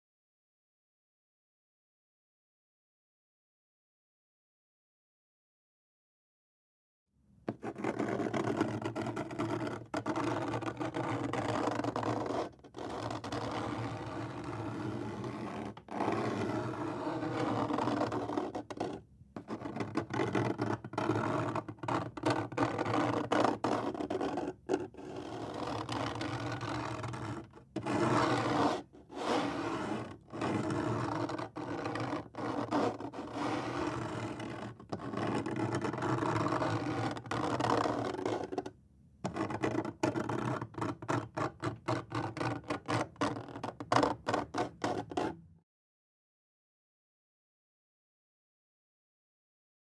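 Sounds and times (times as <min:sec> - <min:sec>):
fingernails scraping wood: 0:20.5 - 0:38.7.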